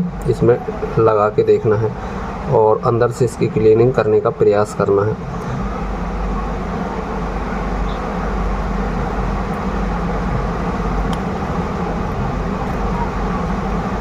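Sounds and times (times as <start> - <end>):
low hum: 0.0 - 14.0.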